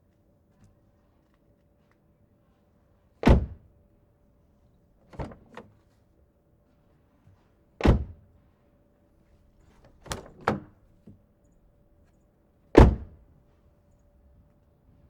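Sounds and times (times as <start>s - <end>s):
car door slamming: 3.2s - 3.7s, 7.8s - 8.2s, 12.8s - 13.2s.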